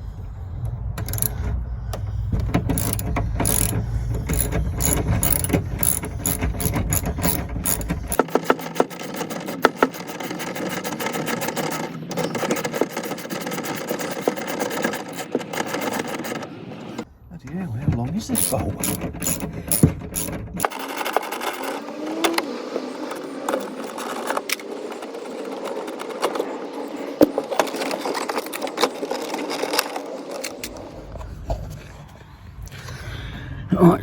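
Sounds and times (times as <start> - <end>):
low steady hum: 0.0 - 8.2
ratchet wrench clicking: 1.0 - 1.4, 2.4 - 16.3, 18.4 - 21.2.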